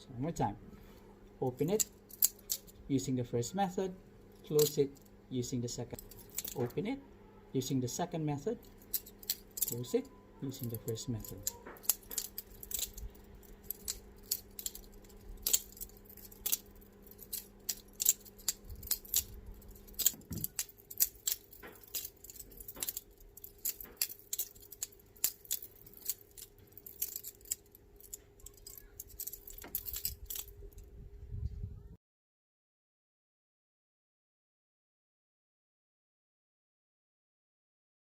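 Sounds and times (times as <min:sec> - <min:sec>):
faint steady hum: 0:00.0 - 0:32.0
butterfly knife handles clicking: 0:01.5 - 0:02.8, 0:04.4 - 0:05.1, 0:05.9 - 0:06.8, 0:08.6 - 0:30.8.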